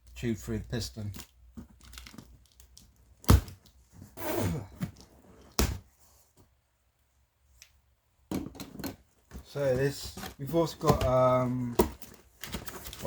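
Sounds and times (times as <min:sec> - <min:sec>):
packaging rustling: 0:09.3 - 0:13.0.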